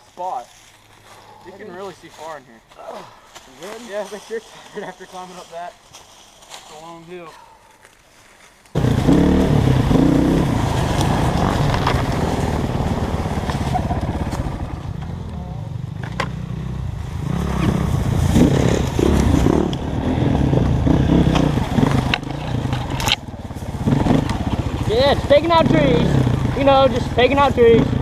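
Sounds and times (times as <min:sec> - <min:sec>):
dirt bike engine revving: 0:08.8 - 0:28.0.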